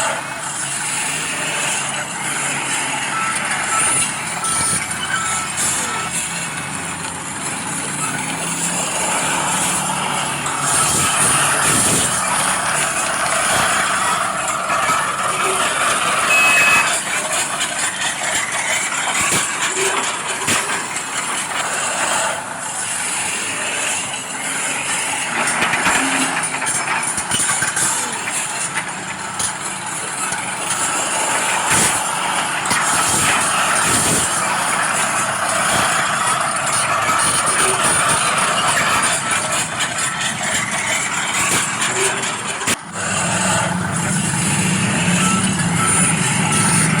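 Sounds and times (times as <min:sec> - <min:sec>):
small electric motors whirring: 0:00.0 - 0:47.0
high beep: 0:16.2 - 0:17.0.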